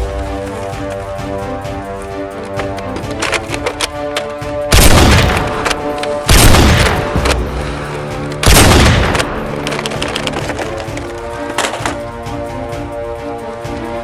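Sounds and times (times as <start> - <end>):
background music: 0.0 - 14.0.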